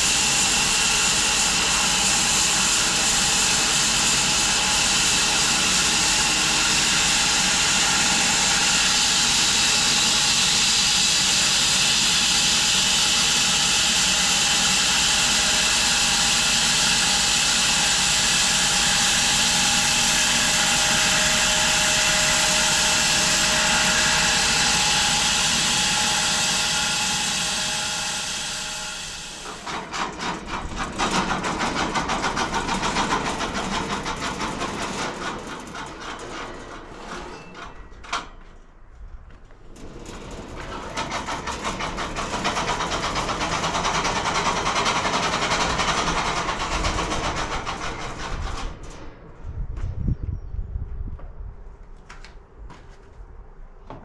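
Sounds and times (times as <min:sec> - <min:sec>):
machine running with loud hiss: 0:00.0 - 0:34.1
rhythmic pulsing engine-like sound: 0:41.0 - 0:48.8.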